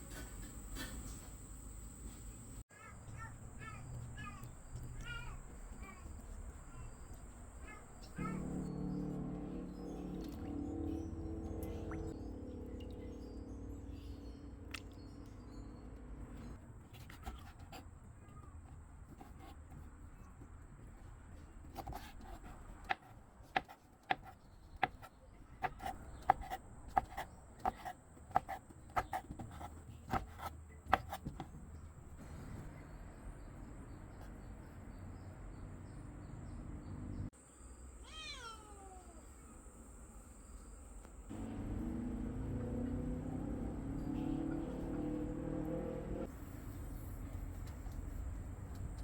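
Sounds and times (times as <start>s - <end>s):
cat meowing: 38.0s - 39.3s.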